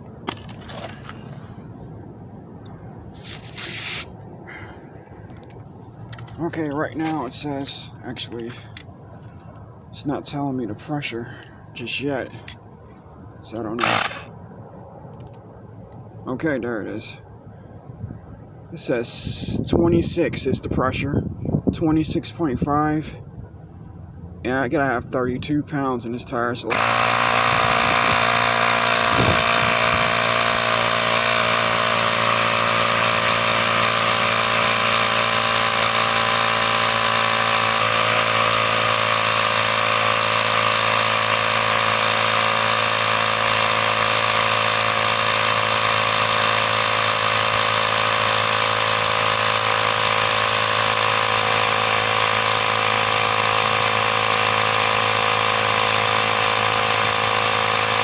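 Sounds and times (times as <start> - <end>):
inflator compressor running: 3.2 - 4.8, 13.8 - 14.3, 26.7 - 58.0.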